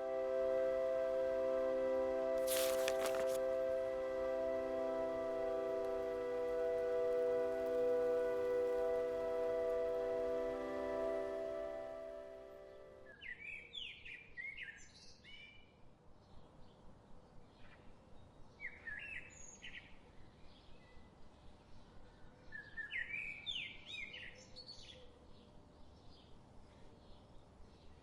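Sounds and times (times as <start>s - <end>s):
background music: 0.0s - 13.2s
faint outdoor background noise: 0.0s - 28.0s.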